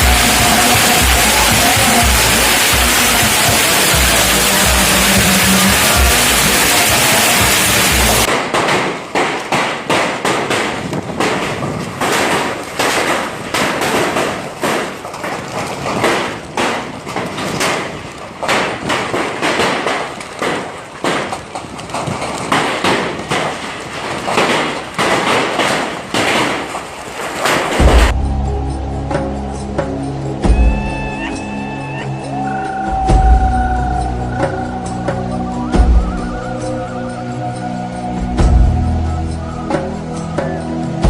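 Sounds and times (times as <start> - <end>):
loud music: 0.0 - 8.3, 27.8 - 41.0
hailstones pelting down: 0.0 - 8.7.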